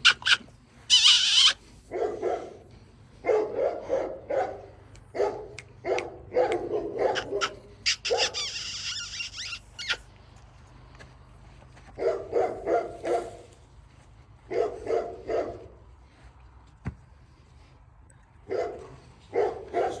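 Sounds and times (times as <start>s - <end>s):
puppies barking: 0.0s - 10.0s, 12.0s - 13.6s, 14.5s - 15.8s, 18.5s - 20.0s.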